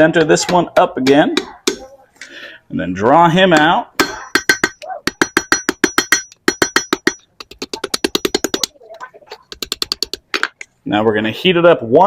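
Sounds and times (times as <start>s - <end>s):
hammer striking steel on anvil: 3.6s - 7.3s.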